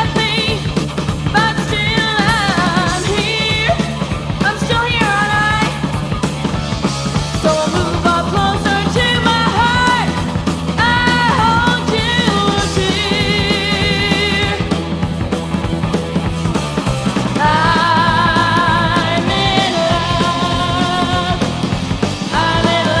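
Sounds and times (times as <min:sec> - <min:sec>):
high lead vocal with vibrato: 0:00.0 - 0:06.1, 0:07.3 - 0:15.1, 0:17.1 - 0:23.0
distorted electric guitars: 0:00.0 - 0:23.0
drums: 0:00.0 - 0:23.0
heavy metal song: 0:00.0 - 0:23.0.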